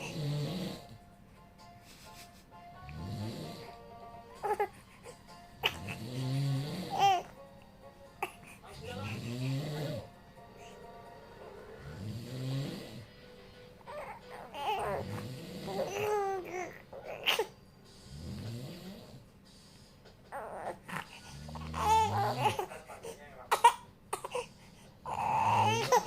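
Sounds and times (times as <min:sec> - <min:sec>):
man snoring: 0:00.0 - 0:01.0, 0:02.8 - 0:03.8, 0:05.7 - 0:07.2, 0:08.8 - 0:10.1, 0:11.7 - 0:13.1, 0:14.8 - 0:16.2, 0:18.0 - 0:19.3, 0:21.0 - 0:22.8
baby crying: 0:04.3 - 0:06.1, 0:06.9 - 0:07.4, 0:13.8 - 0:17.6, 0:20.3 - 0:26.0.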